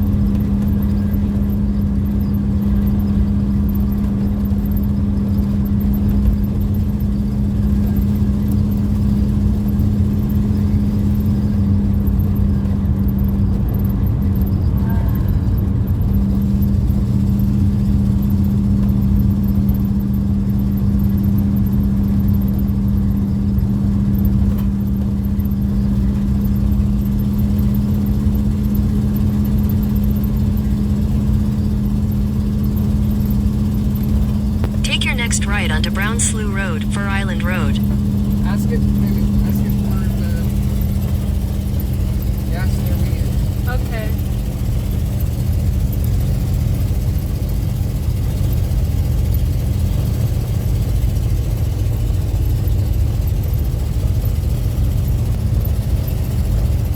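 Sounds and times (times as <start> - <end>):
steady droning hum: 34.7 - 40.5.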